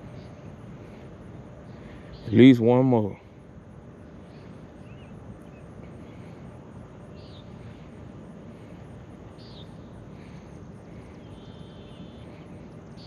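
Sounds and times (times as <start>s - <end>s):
outdoor background noise by water: 0.0s - 13.0s
high bird chirps: 7.1s - 7.7s, 9.4s - 9.8s.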